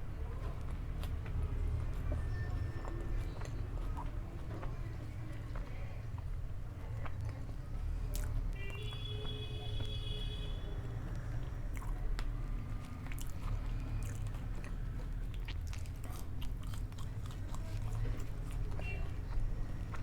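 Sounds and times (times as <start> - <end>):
person chewing crunchy food: 8.1 - 9.0, 11.0 - 20.0
wet mouth sounds: 11.1 - 20.0.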